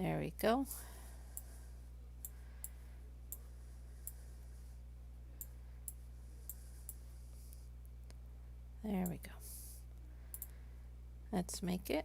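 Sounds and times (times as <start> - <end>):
faint low hum: 0.0 - 12.0
computer mouse clicking: 10.3 - 10.5.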